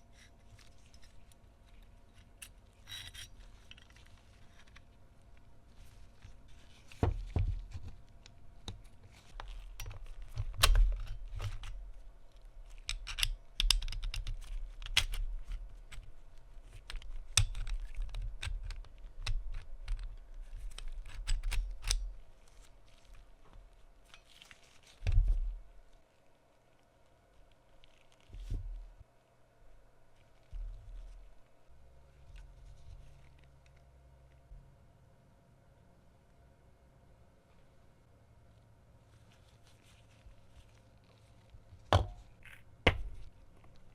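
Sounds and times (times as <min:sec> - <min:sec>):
metal parts clicking and tapping: 0:12.7 - 0:15.2
dull knocks on workbench: 0:42.0 - 0:42.2.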